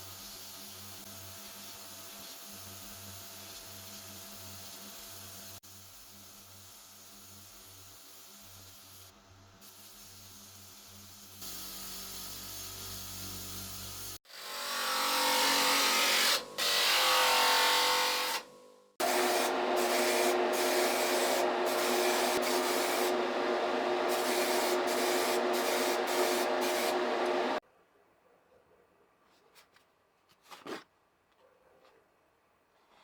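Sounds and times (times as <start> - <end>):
power tool grinding: 19.0 - 27.6.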